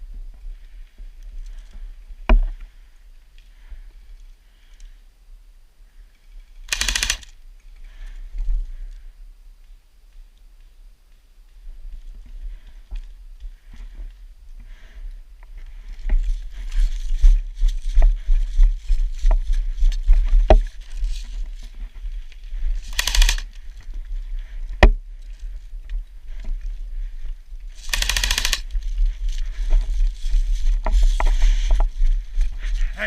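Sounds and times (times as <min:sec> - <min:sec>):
airsoft gun rapid bursts: 0:06.7 - 0:07.3, 0:22.8 - 0:23.5, 0:27.8 - 0:28.6.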